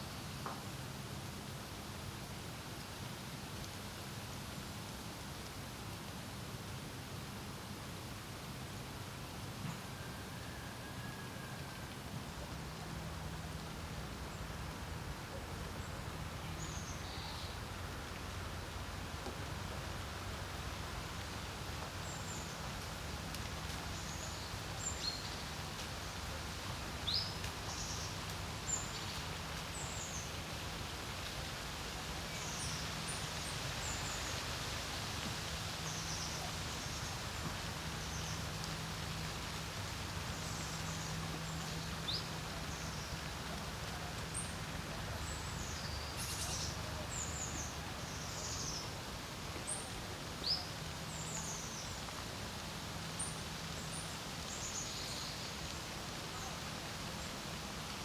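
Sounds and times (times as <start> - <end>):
small birds chirping: 44.0 - 49.0.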